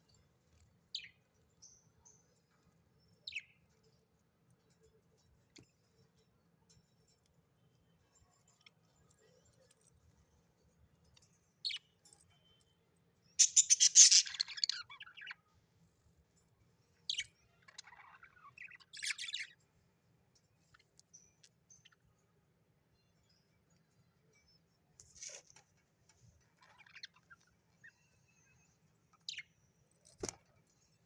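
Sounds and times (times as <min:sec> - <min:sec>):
budgerigars chirping: 0:13.4 - 0:14.7.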